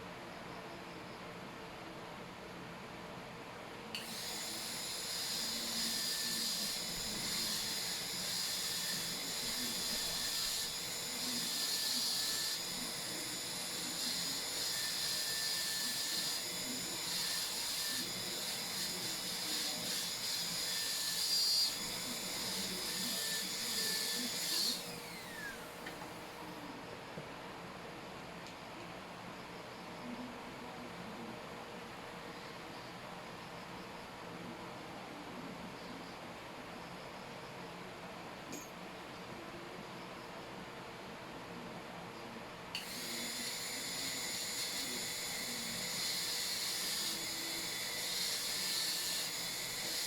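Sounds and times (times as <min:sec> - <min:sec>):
dental drill whining: 0:04.0 - 0:26.4, 0:42.8 - 0:50.0.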